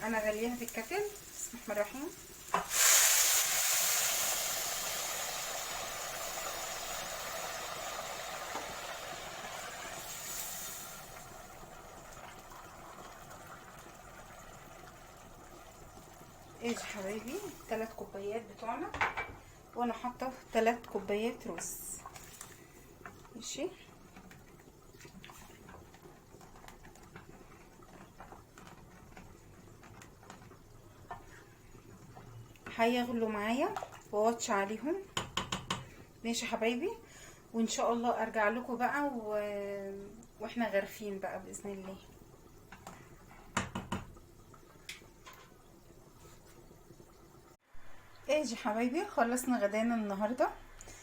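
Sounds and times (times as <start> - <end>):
water pouring into hot pot: 0.0 - 18.7
pot ticking and popping: 0.0 - 36.4, 41.5 - 47.4
loud sizzling and hissing steam: 1.2 - 11.2.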